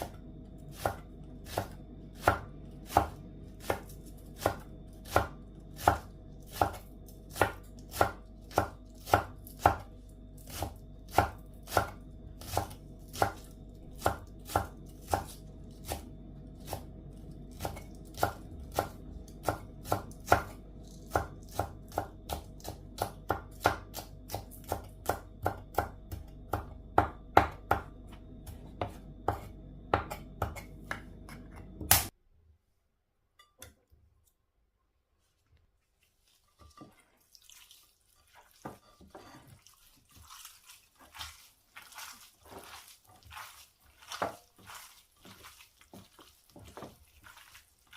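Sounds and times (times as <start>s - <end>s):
knife chopping on cutting board: 0.0s - 16.9s, 17.5s - 32.1s.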